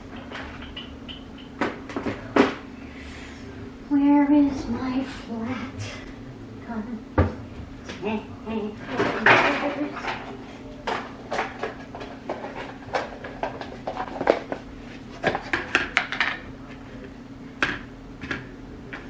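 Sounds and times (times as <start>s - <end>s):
steady low hum: 0.0s - 19.0s
kitchen dishes clattering: 8.8s - 14.6s.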